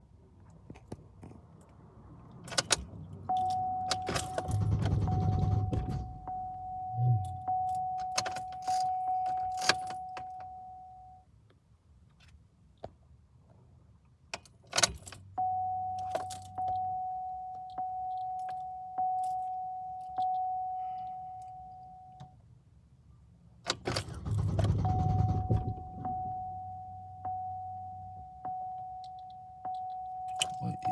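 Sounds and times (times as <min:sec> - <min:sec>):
keys jangling in ignition: 0:02.3 - 0:10.6, 0:14.4 - 0:15.3, 0:15.9 - 0:16.9, 0:17.5 - 0:21.8, 0:23.6 - 0:26.3, 0:29.0 - 0:30.9
car engine cranking: 0:02.4 - 0:10.0, 0:23.7 - 0:26.4
car warning chime dinging: 0:03.2 - 0:11.3, 0:15.3 - 0:22.4, 0:24.2 - 0:30.9.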